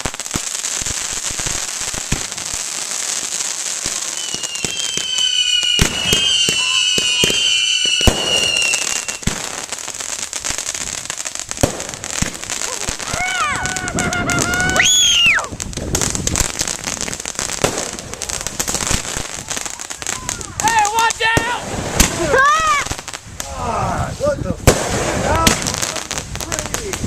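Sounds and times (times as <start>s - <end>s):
fireworks crackling and banging: 0.0s - 27.0s
whistling firework: 3.8s - 9.8s, 11.6s - 23.0s.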